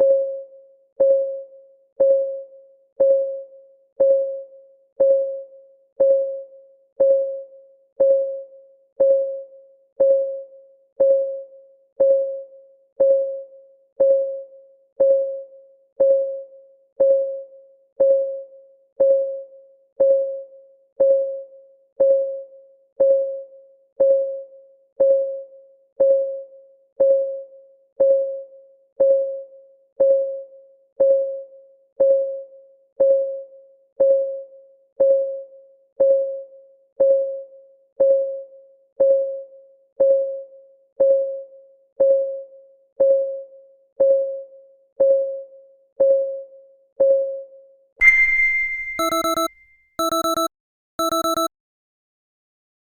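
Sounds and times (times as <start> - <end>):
countdown timer ticking: 48.0 - 51.5.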